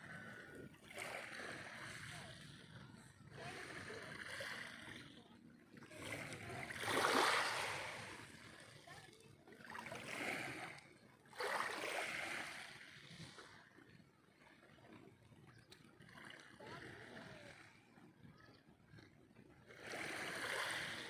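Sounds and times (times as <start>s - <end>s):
small waves lapping: 0.0s - 21.0s.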